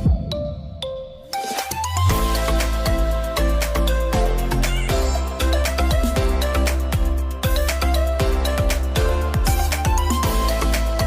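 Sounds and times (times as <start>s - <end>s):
electronic music with heavy bass: 0.0s - 11.0s.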